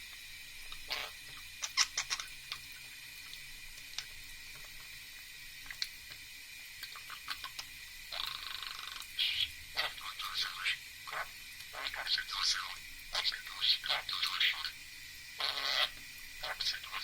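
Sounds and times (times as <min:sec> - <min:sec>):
bird raspy hiss: 0:00.8 - 0:02.7, 0:06.9 - 0:17.0
bird chattering chirps: 0:08.2 - 0:14.7.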